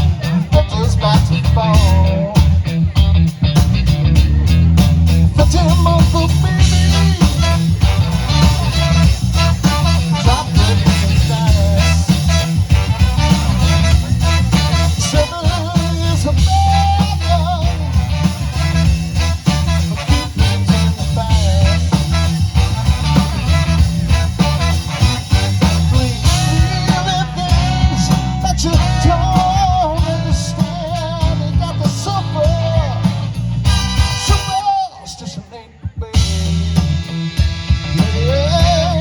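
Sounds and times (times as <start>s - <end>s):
drum beat: 0.0s - 34.8s
bass: 0.0s - 39.0s
horns playing melody: 5.4s - 35.6s.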